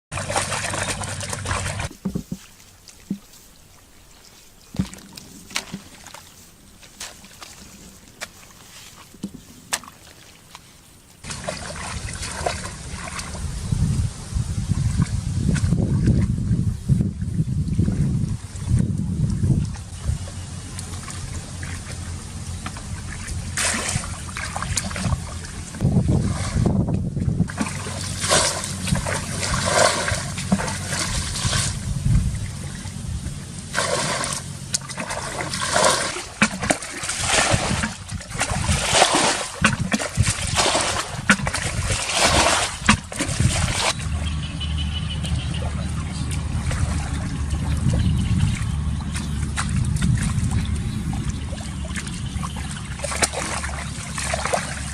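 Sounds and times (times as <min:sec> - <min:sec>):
water splashing: 0:00.1 - 0:14.0, 0:17.2 - 0:54.9
low rumble: 0:11.3 - 0:39.0, 0:39.7 - 0:54.9.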